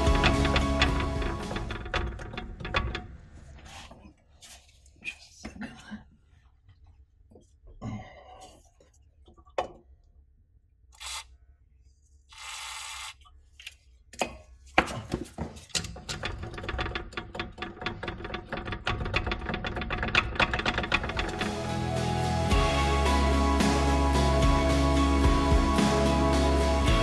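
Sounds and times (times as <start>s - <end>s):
steady tones: 0.0s - 1.9s, 21.0s - 27.0s
music: 0.0s - 2.0s, 21.0s - 27.0s.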